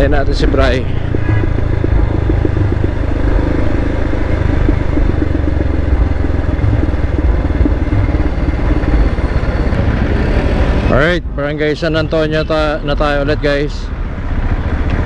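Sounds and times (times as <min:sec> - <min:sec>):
motorcycle engine running: 0:00.0 - 0:11.2
wind and road noise: 0:00.0 - 0:15.0.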